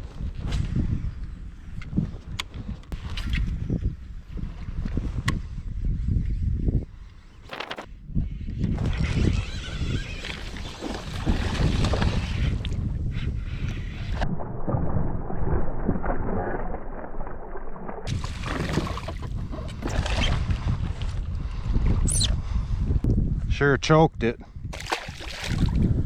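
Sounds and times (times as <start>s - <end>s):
wind buffeting microphone: 0.0s - 17.2s, 18.0s - 26.0s
water sloshing against kayak hull: 14.6s - 20.6s.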